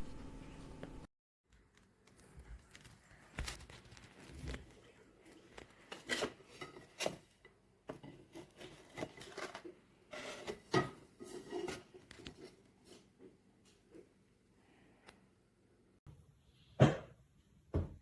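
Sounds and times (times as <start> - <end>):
rubbing and scraping: 8.0 - 13.2.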